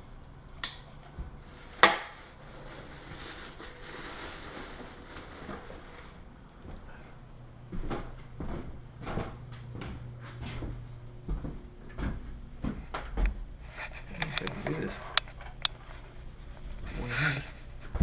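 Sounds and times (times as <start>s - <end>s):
low steady hum: 0.0s - 18.0s
soft rustling: 1.0s - 6.3s.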